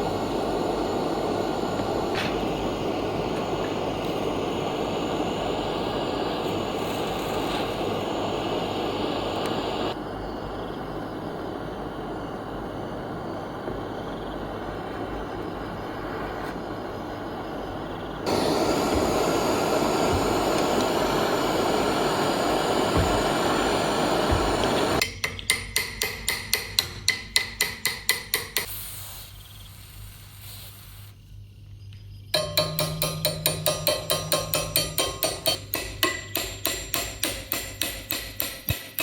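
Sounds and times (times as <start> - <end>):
hammer blows on metal: 32.4 - 39.0.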